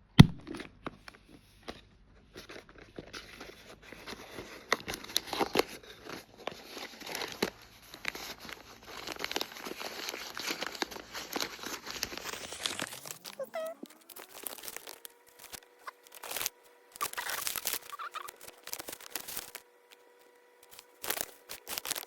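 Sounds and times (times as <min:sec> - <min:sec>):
plastic packaging crinkling and tearing: 0:00.5 - 0:22.0.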